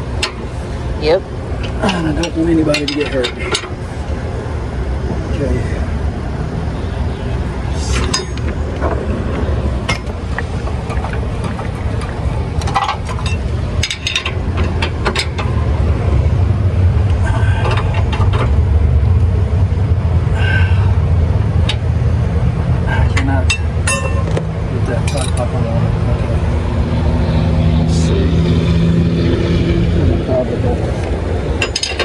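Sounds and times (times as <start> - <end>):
steady low rumble: 0.0 - 32.0
wrench clinking on metal: 31.6 - 32.0.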